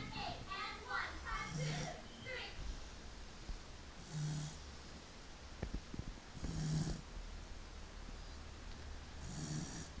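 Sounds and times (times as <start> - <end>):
dog snoring: 1.5 - 2.0, 4.0 - 4.7, 6.4 - 7.1, 9.2 - 10.0.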